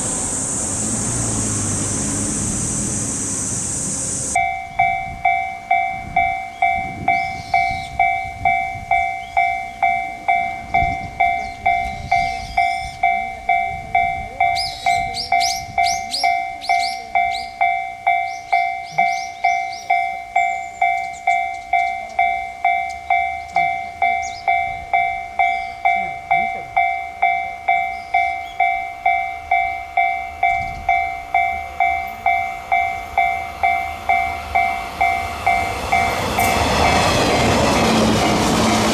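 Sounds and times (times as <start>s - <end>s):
birds chirping: 0.0s - 5.0s, 6.4s - 8.1s, 9.0s - 13.2s, 14.5s - 24.8s, 25.4s - 26.5s, 27.7s - 28.9s
level crossing warning bell: 0.0s - 38.9s
train rumble: 0.0s - 38.9s.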